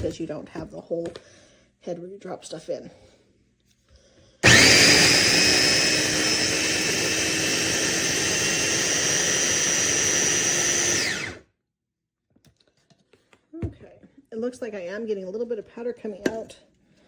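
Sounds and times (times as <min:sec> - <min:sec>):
food processor whining: 0:04.4 - 0:11.4.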